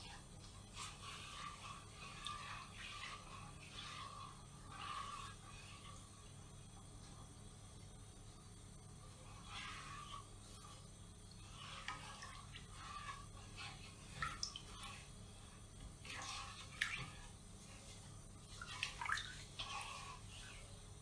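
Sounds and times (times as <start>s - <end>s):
liquid splashes and drips: 14.1s - 15.0s, 16.1s - 17.3s, 18.5s - 20.0s.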